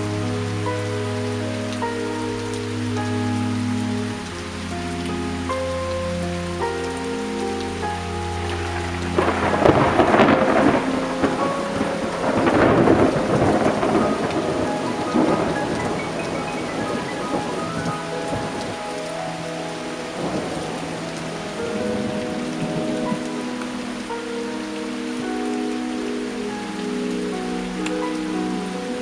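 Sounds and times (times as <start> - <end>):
heavy rain: 0.0 - 29.0
thunderclap rumbling: 8.5 - 24.0.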